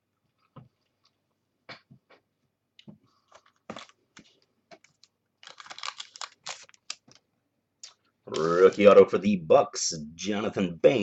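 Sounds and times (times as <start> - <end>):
crackling plastic rustle: 4.8 - 7.2.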